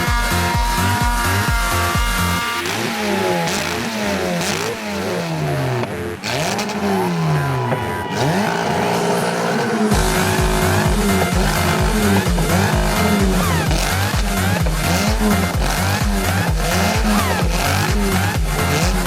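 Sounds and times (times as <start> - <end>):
music: 0.0 - 2.7, 9.9 - 19.0
heavy bass beat: 0.0 - 19.0
motocross bikes revving and passing: 0.0 - 19.0.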